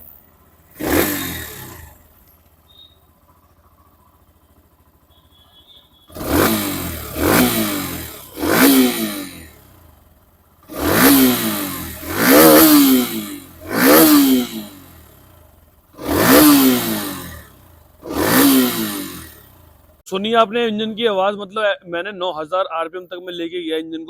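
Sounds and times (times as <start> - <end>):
engine revving blips: 0.0 - 3.5, 4.2 - 10.0, 10.6 - 19.9
motorcycle engine idling: 0.0 - 20.1.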